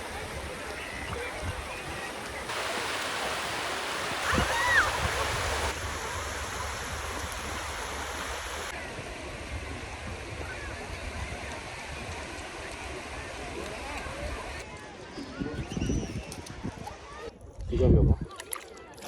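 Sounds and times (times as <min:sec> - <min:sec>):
surf rushing: 0:00.0 - 0:08.7
wind: 0:00.0 - 0:19.0.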